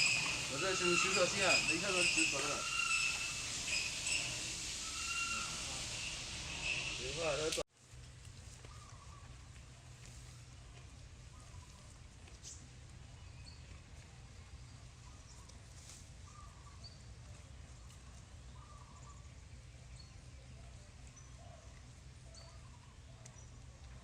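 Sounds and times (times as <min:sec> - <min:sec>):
high bird chirps: 0:00.0 - 0:07.4
lower bird calls: 0:00.0 - 0:07.6, 0:08.6 - 0:09.4, 0:16.2 - 0:17.1, 0:18.4 - 0:20.5.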